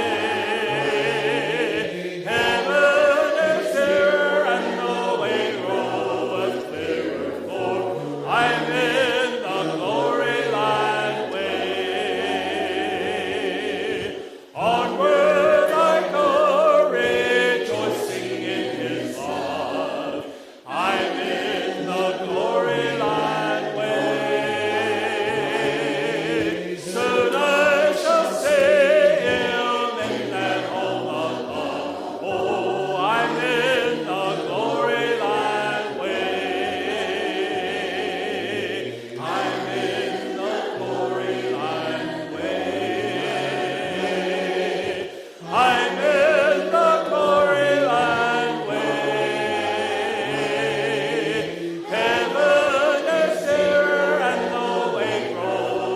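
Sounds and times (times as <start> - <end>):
voices singing together: 0.0 - 55.9.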